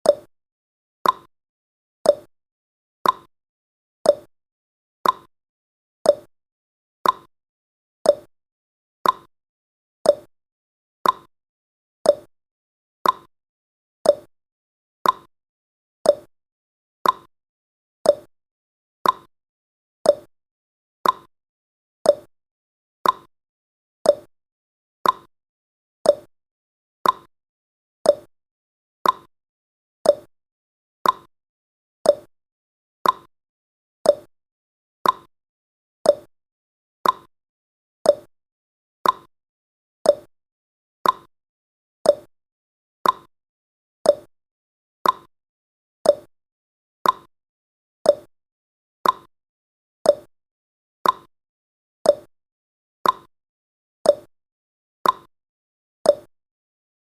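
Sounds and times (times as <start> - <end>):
timer ticking: 0.0 - 0.3, 1.0 - 1.3, 2.1 - 2.3, 3.0 - 3.3, 4.1 - 4.3, 5.0 - 5.3, 6.1 - 6.3, 7.0 - 7.3, 8.1 - 8.3, 9.0 - 9.3, 10.1 - 10.3, 11.0 - 11.3, 12.1 - 12.3, 13.0 - 13.3, 14.1 - 14.3, 15.0 - 15.3, 16.1 - 16.3, 17.0 - 17.3, 18.1 - 18.3, 19.0 - 19.3, 20.1 - 20.3, 21.0 - 21.3, 22.1 - 22.3, 23.0 - 23.3, 24.1 - 24.3, 25.0 - 25.3, 26.0 - 26.3, 27.0 - 27.3, 28.0 - 28.3, 29.0 - 29.3, 30.0 - 30.3, 31.0 - 31.3, 32.0 - 32.3, 33.0 - 33.3, 34.0 - 34.3, 35.0 - 35.3, 36.0 - 36.3, 37.0 - 37.3, 38.1 - 38.3, 39.0 - 39.3, 40.1 - 40.3, 41.0 - 41.3, 42.1 - 42.3, 43.0 - 43.3, 44.1 - 44.3, 45.0 - 45.3, 46.1 - 46.3, 47.0 - 47.3, 48.1 - 48.3, 49.0 - 49.3, 50.1 - 50.3, 51.0 - 51.3, 52.1 - 52.3, 53.0 - 53.3, 54.1 - 54.3, 55.0 - 55.3, 56.1 - 56.3.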